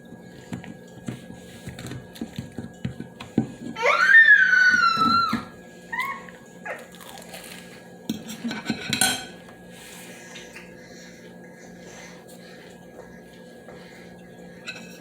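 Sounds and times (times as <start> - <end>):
cutlery clinking on plates: 8.1 - 9.4.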